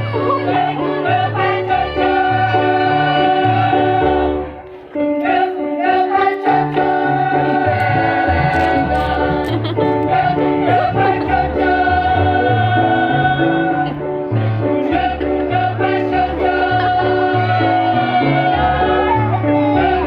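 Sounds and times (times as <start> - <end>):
choir singing with accompaniment: 0.0 - 20.0
steady bass line: 7.0 - 20.0.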